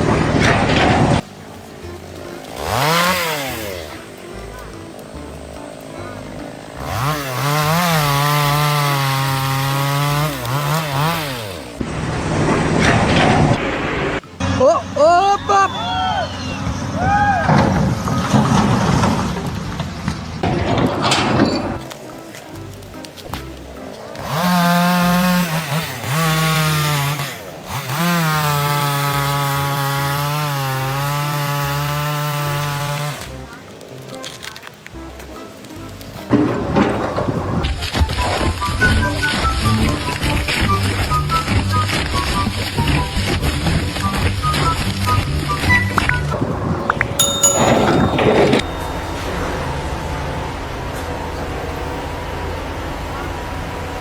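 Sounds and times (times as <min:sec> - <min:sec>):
small engine revving: 0:01.9 - 0:14.5, 0:24.2 - 0:33.3.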